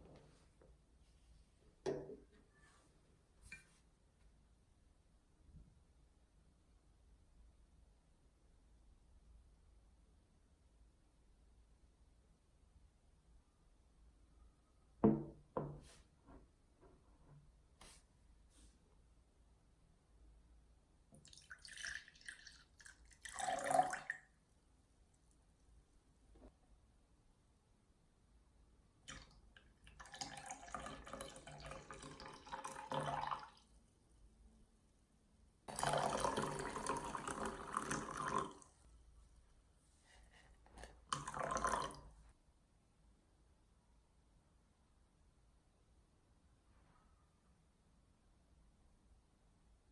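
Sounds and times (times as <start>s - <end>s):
liquid trickling and dripping: 21.1s - 24.3s, 29.1s - 33.7s
liquid poured into cup: 21.2s - 24.2s, 29.1s - 33.7s, 35.7s - 38.7s, 40.8s - 42.1s.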